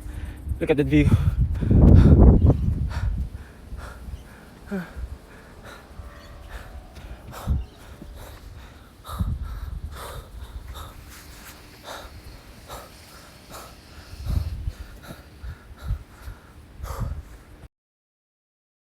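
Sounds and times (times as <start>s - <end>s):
low thumps: 0.0s - 12.9s
person breathing hard: 0.0s - 17.6s.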